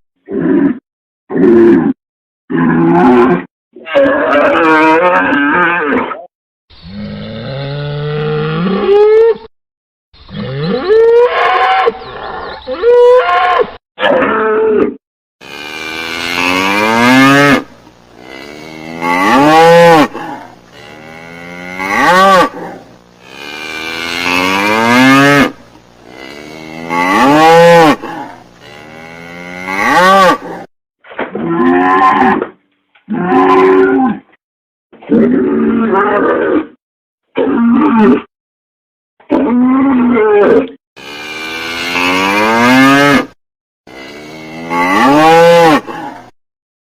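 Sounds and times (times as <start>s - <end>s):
cattle mooing: 15.4s - 30.7s, 41.0s - 46.3s.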